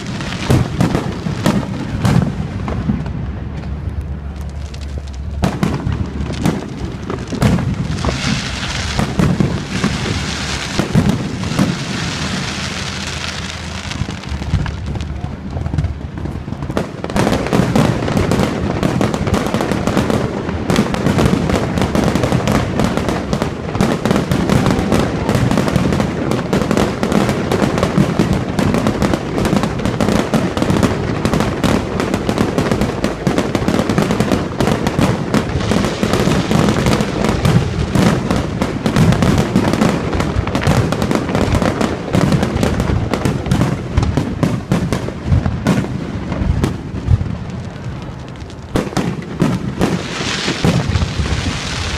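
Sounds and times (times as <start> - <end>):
fireworks barrage: 0.0 - 51.9
deep rumble: 1.2 - 16.9.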